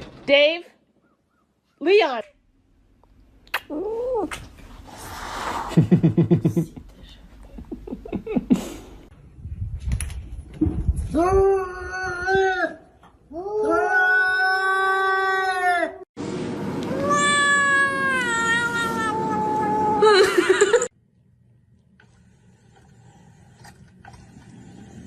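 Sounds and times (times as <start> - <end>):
cat yowling: 16.9 - 20.1.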